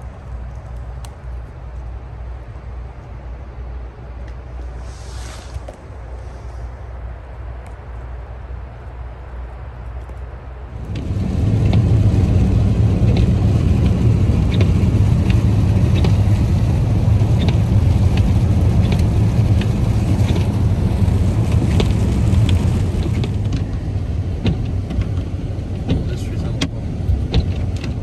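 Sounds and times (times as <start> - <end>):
car road rumble: 0.0 - 28.0
light ticks and clicks: 9.8 - 20.7.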